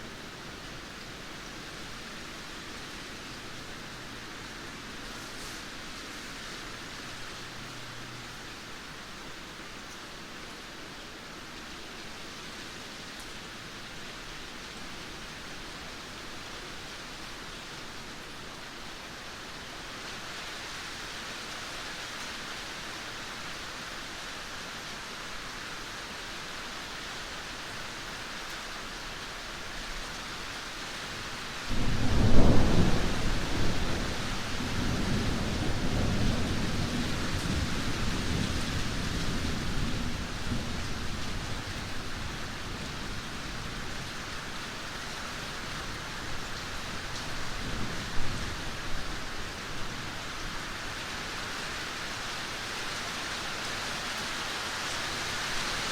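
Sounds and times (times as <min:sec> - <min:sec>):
heavy rain: 0:00.0 - 0:55.9
thunder: 0:31.7 - 0:40.8.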